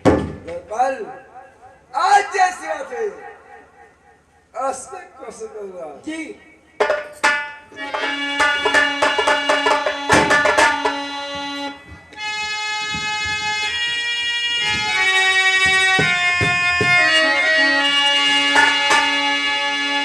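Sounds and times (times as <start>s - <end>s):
reed organ melody: 10.8s - 20.0s.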